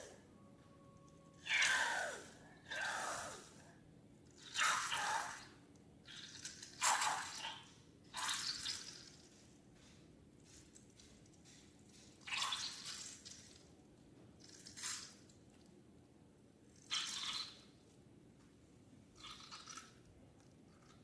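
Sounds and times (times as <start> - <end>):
wet slime squelching: 4.2 - 15.4, 16.8 - 17.8, 19.1 - 21.0.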